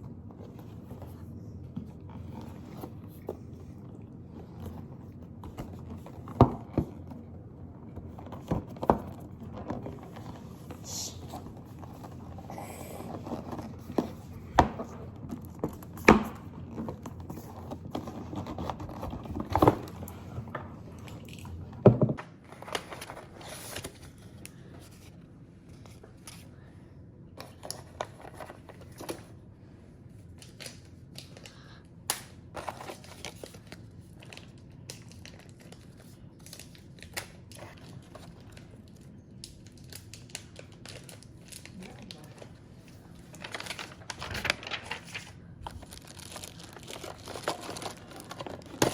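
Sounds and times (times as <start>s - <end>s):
plastic and paper crinkling: 32.5s - 48.9s.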